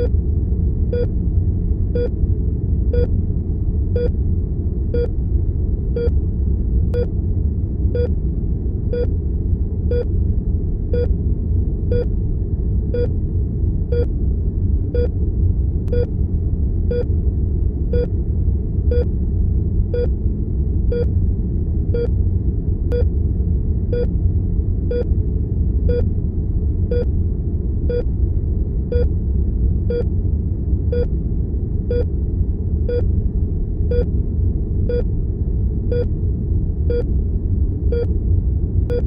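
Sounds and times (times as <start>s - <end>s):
low rumble of room tone: 0.0s - 39.0s
heart monitor beeping: 6.0s - 6.2s, 15.9s - 16.1s, 25.9s - 26.1s, 28.9s - 29.1s, 30.9s - 31.1s, 32.9s - 33.1s, 34.9s - 35.1s, 35.9s - 36.1s, 37.9s - 38.1s.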